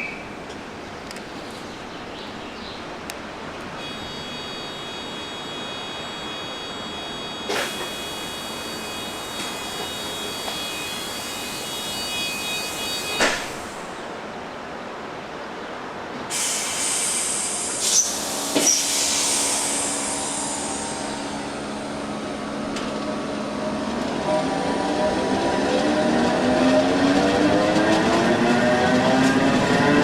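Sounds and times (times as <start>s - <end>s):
steady high tones: 3.8s - 13.8s, 18.8s - 22.7s
traction motor whine: 3.8s - 13.9s
burst of hiss: 16.3s - 21.4s.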